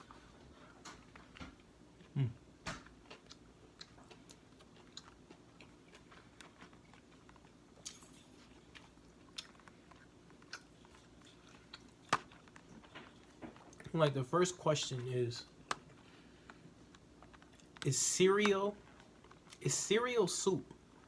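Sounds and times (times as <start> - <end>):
man chewing: 0.0 - 13.9, 15.5 - 17.9.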